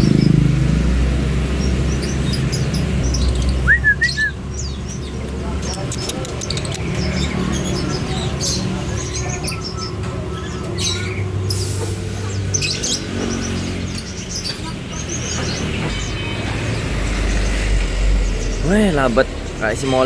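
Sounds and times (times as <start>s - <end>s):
songbirds chirping: 0.0s - 20.0s
low background rumble: 15.9s - 20.0s.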